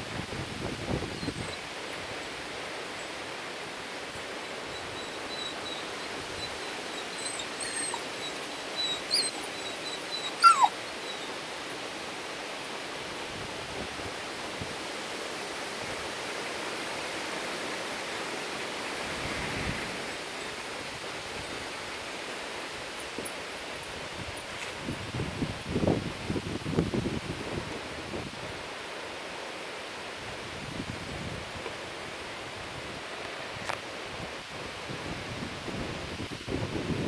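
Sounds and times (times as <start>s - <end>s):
steady wind noise: 0.0s - 18.1s, 18.7s - 37.0s
dog whimpering: 5.0s - 11.4s.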